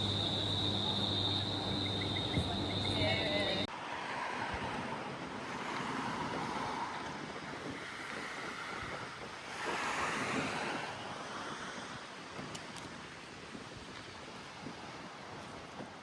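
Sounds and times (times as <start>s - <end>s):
ocean surf washing in: 0.0s - 12.3s.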